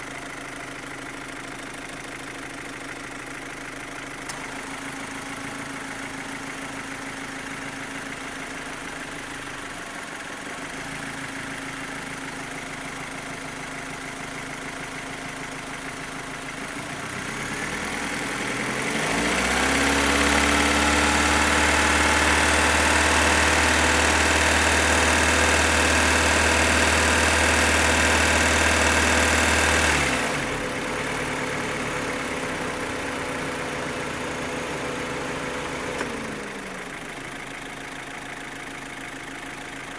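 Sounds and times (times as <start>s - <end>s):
car engine idling and revving: 0.0s - 39.9s
loud engine ticking: 0.0s - 39.9s.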